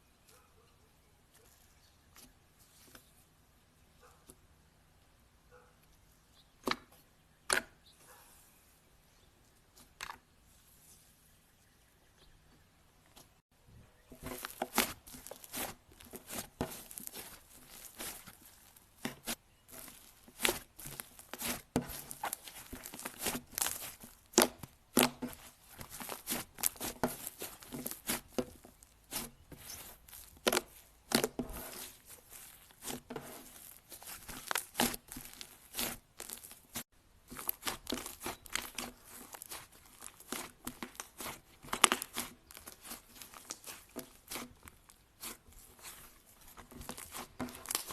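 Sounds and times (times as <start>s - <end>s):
slime crackling and popping: 14.2s - 47.9s.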